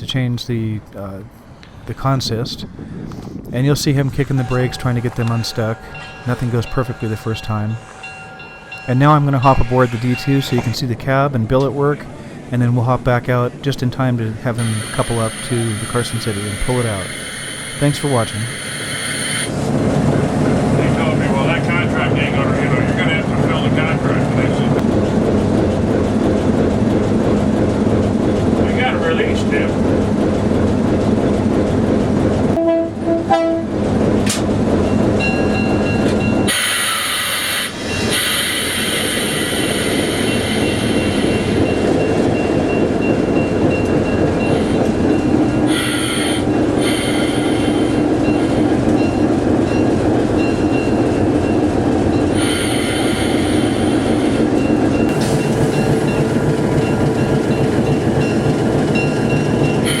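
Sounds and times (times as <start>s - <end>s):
diesel locomotive running: 0.0s - 60.0s
high-pitched wheel squeal: 14.6s - 19.6s
locomotive horn: 32.6s - 33.8s.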